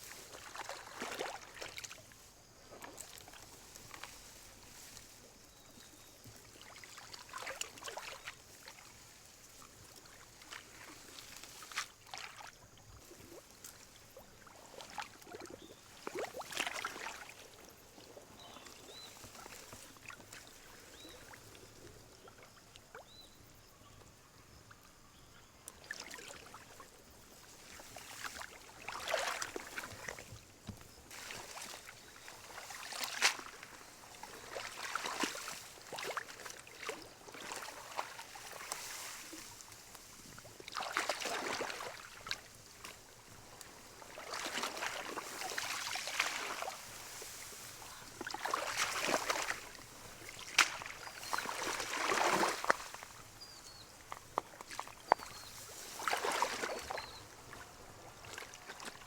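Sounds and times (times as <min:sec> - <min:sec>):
water splashing and sloshing: 0:00.0 - 0:23.1, 0:25.7 - 0:59.0.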